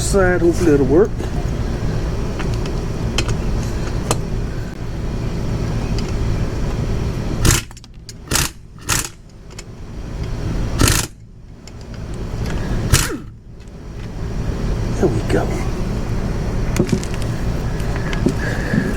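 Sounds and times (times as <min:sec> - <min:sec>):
low rumble of handling noise: 0:00.0 - 0:18.9.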